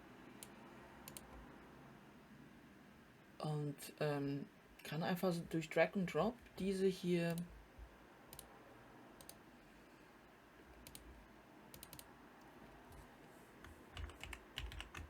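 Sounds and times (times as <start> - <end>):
computer mouse and keyboard clicks: 0.3 - 1.4, 9.2 - 9.4, 10.8 - 15.0.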